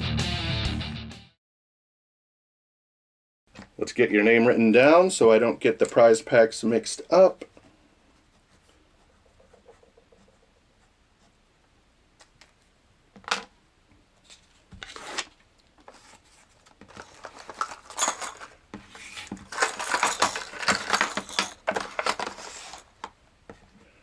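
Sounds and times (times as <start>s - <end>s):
objects clattering on desk: 13.2s - 13.5s, 16.8s - 23.7s.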